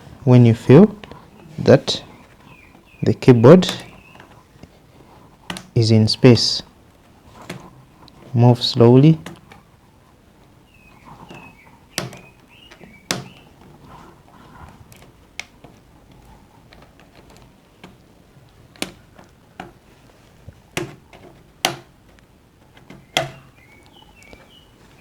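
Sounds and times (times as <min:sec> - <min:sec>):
keyboard clips clicking and snapping: 0:05.5 - 0:05.8.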